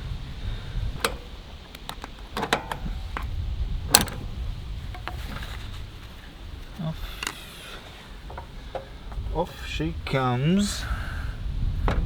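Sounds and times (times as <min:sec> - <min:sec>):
low handling rumble: 0:00.0 - 0:12.0
sharp knocks and clicks: 0:01.0 - 0:03.3, 0:03.9 - 0:04.3.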